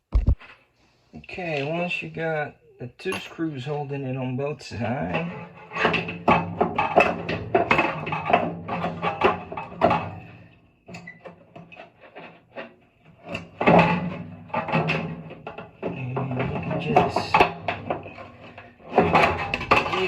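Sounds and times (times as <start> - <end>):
metal tools clinking and scraping: 3.0 - 3.8.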